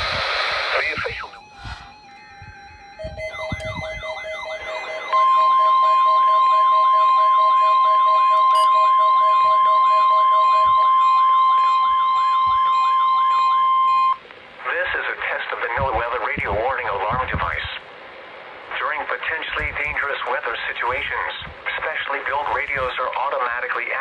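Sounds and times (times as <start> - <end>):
steady alarm tone: 0.7 - 14.2
pulsing beep: 0.8 - 14.2
faint steady high tone: 0.9 - 14.2
wailing siren sweep: 0.9 - 14.2.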